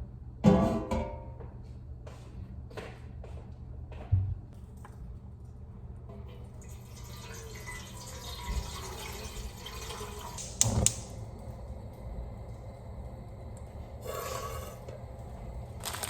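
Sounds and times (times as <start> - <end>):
water running from a tap: 6.5 - 11.2.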